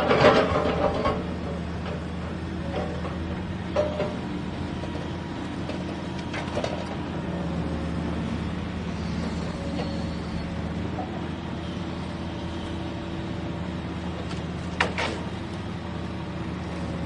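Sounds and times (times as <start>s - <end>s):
vehicle engine idling: 1.4s - 17.0s.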